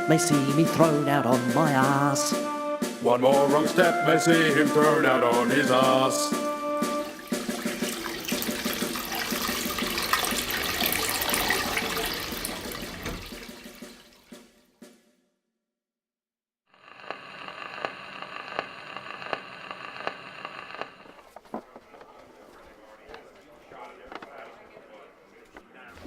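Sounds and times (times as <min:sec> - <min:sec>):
rushing water: 0:06.3 - 0:14.4
soft ticking: 0:17.0 - 0:25.7.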